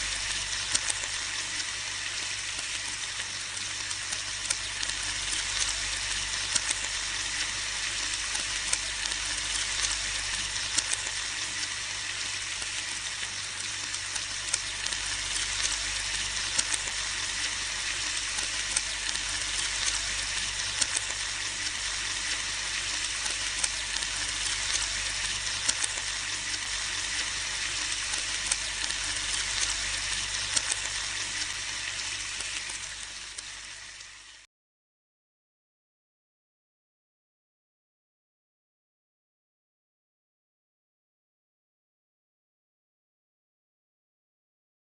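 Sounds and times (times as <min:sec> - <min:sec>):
fat crackling and popping: 0:00.0 - 0:01.8, 0:02.6 - 0:33.6
bacon sizzling in a pan: 0:00.0 - 0:34.5.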